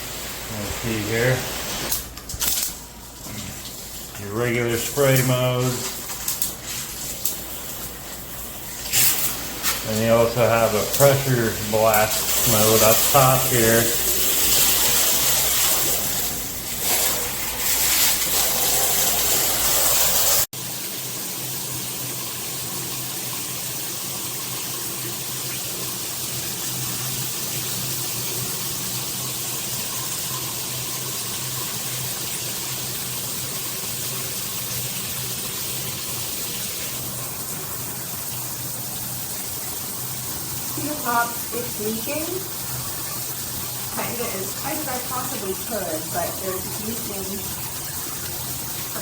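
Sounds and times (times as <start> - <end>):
shower head spraying loud hiss: 0.0 - 20.5
running shower water: 0.0 - 49.0.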